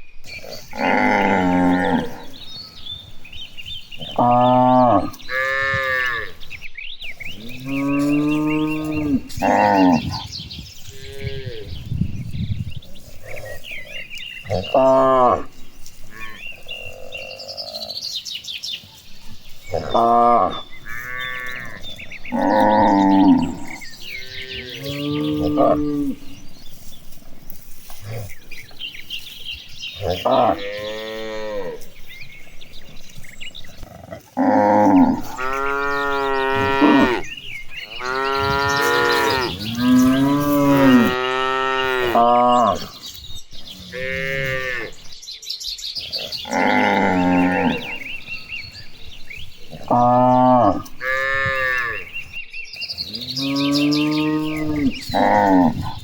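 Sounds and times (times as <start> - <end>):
cattle mooing: 0.6 - 2.4, 4.0 - 6.4, 7.4 - 10.2, 19.7 - 26.4, 30.0 - 31.9, 33.8 - 42.9, 46.4 - 48.2, 49.7 - 52.1, 53.2 - 56.0.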